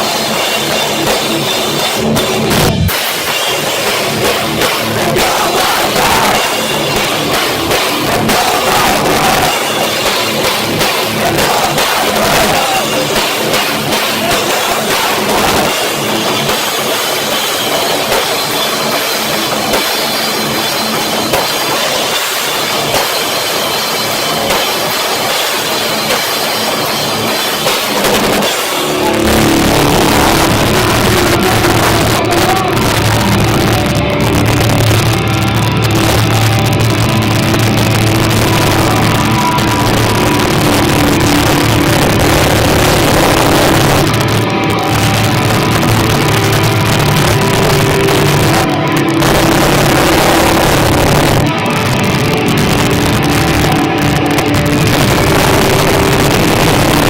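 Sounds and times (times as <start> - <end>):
heavy low drone: 0.0 - 57.0
rock band playing live: 0.0 - 57.0.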